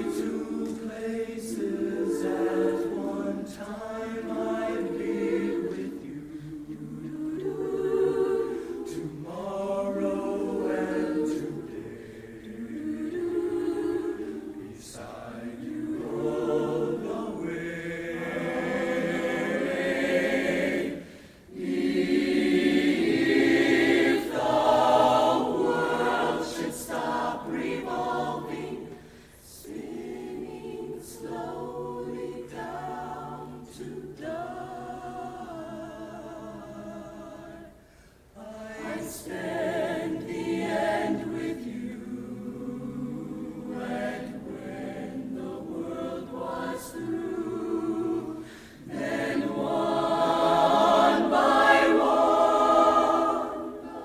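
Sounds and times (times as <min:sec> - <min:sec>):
choir singing sustained chords: 0:00.0 - 0:54.0.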